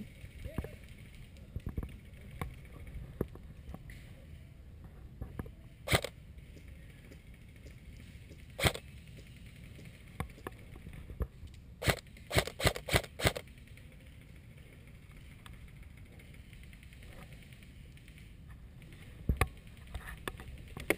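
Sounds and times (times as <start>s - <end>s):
airsoft gun shots: 5.9s - 6.1s, 8.6s - 8.8s, 11.8s - 13.4s.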